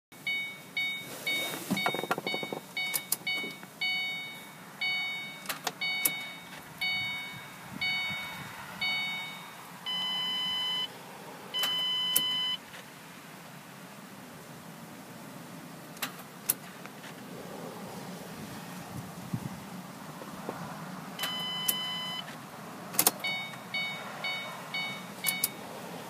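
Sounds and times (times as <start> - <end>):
car warning chime: 0.2 - 10.9, 11.5 - 12.6, 21.2 - 22.3, 23.2 - 25.6
long steady beeps: 0.2 - 10.9, 11.5 - 12.6, 21.2 - 22.3, 23.2 - 25.6.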